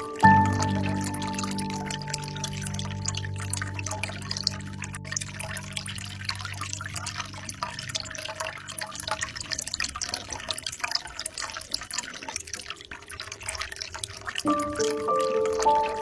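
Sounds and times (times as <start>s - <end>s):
low steady hum: 0.0s - 9.8s
water trickling into a pond: 0.0s - 16.0s.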